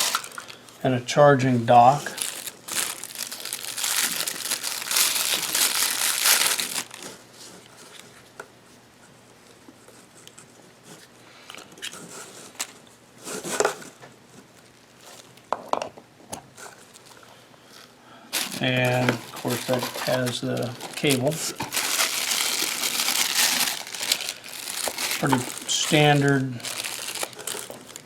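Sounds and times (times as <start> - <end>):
packaging crinkling: 0.0 - 0.8, 1.9 - 7.2, 18.3 - 28.0.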